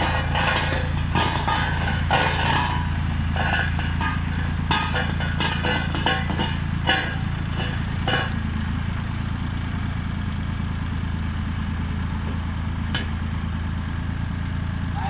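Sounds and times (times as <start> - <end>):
road roller engine running: 0.0 - 15.0.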